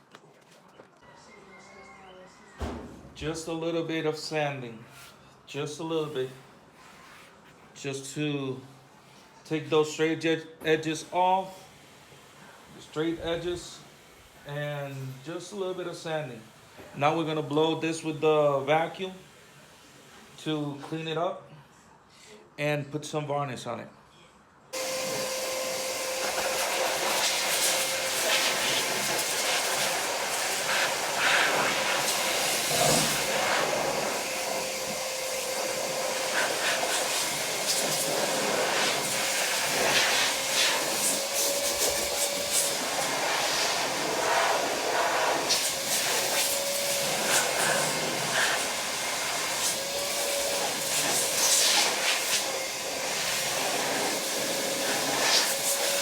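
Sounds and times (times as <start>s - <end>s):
shop vacuum blowing air: 9.5s - 21.2s, 24.8s - 56.0s.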